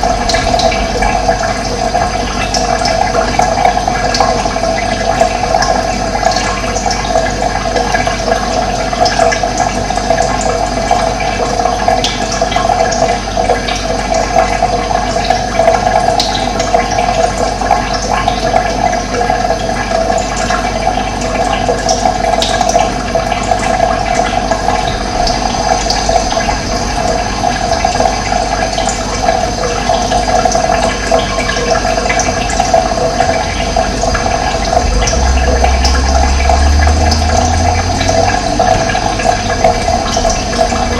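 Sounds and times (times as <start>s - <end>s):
low rumble: 0.0s - 5.5s, 23.8s - 30.4s, 32.2s - 40.9s
running water: 0.0s - 40.9s.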